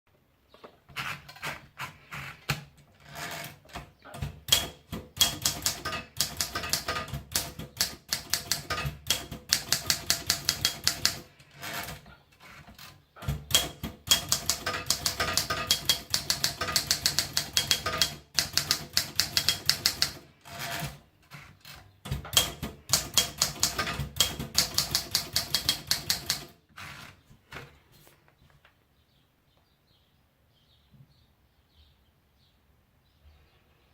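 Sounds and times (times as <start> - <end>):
typewriter key strikes: 4.2 - 11.3, 13.2 - 20.2, 22.1 - 26.5.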